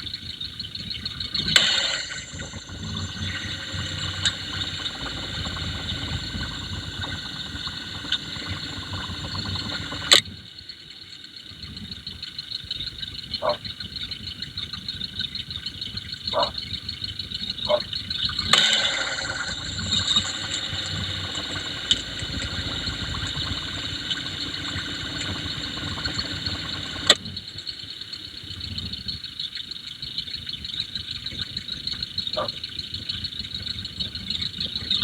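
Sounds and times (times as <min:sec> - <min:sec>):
fuel injectors ticking: 0:01.4 - 0:10.2, 0:18.4 - 0:27.2
probe scraping: 0:01.5 - 0:10.2, 0:18.5 - 0:27.2
sharp click: 0:01.5 - 0:10.2, 0:18.5 - 0:27.2.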